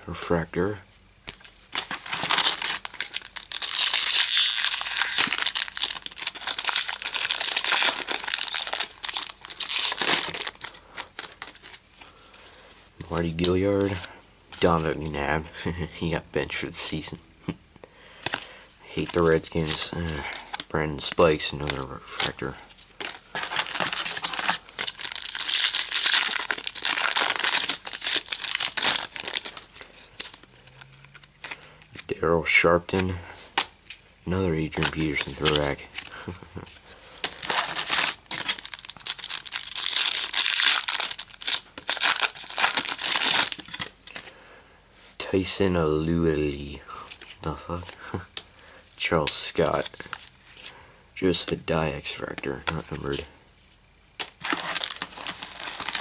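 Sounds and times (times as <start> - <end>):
wrapper crinkling and crackling: 1.2 - 11.9, 18.2 - 44.3, 51.3 - 56.0.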